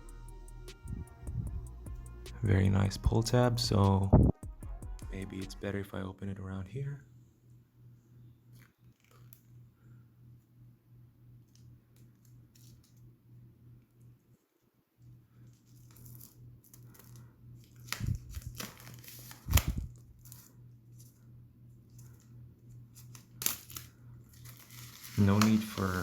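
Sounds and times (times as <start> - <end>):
steady low hum: 0.0 - 26.0
packaging tearing and crinkling: 15.6 - 20.5, 22.9 - 26.0.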